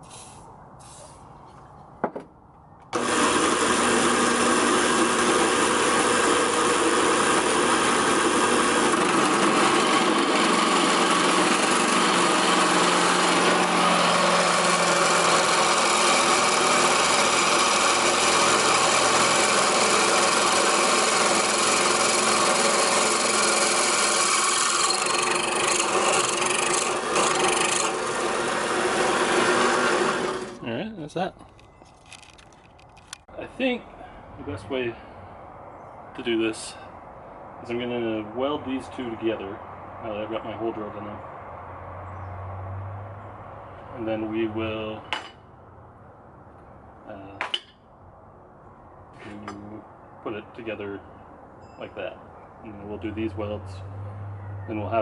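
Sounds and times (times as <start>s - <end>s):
drill bit cutting steel: 3.0s - 30.6s
drill press motor whine: 3.0s - 30.6s.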